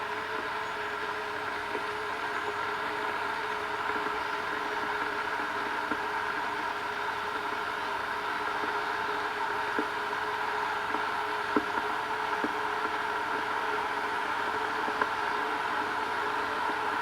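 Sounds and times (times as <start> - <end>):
kettle ticks and pops: 3.4 - 16.4.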